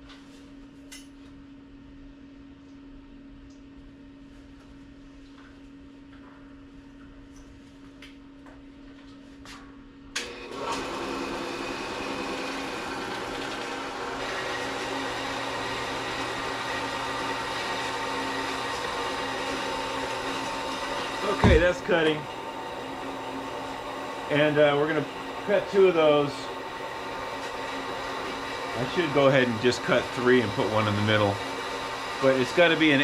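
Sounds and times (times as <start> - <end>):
power saw cutting steel: 10.2 - 33.0
steady hum: 21.1 - 33.0.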